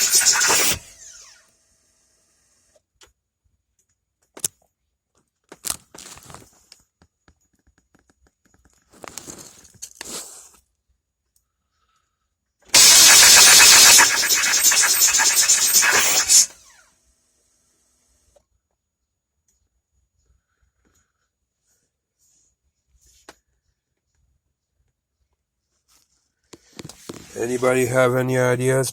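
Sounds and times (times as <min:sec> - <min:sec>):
sharp clicks and rattles: 0:00.0 - 0:00.8, 0:12.8 - 0:16.5
starter cranking engine: 0:00.0 - 0:01.1, 0:12.8 - 0:16.5.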